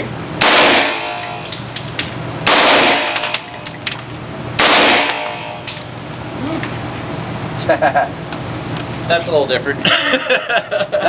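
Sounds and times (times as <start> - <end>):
machine-gun fire echoing indoors: 0.4 - 1.3, 2.5 - 3.6, 4.6 - 5.7.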